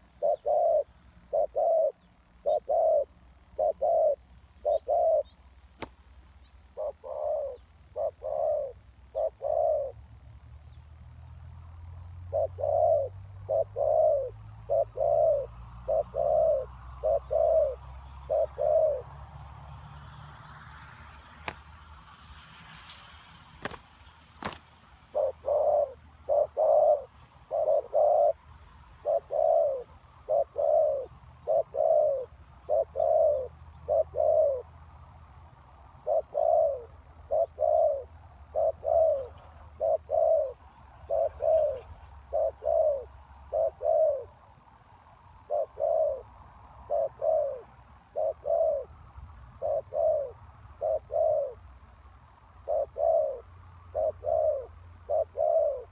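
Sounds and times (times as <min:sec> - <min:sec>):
dove cooing: 0:00.0 - 0:05.9, 0:06.7 - 0:10.0, 0:12.2 - 0:19.2, 0:24.4 - 0:34.7, 0:36.0 - 0:44.4, 0:45.4 - 0:48.9, 0:49.5 - 0:51.7, 0:52.6 - 0:55.9.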